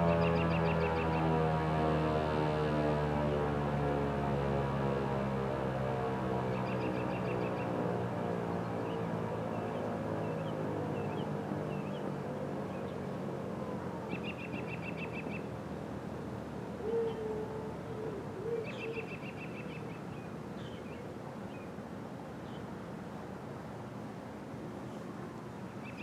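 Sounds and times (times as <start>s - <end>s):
lower bird call: 16.8s - 21.0s.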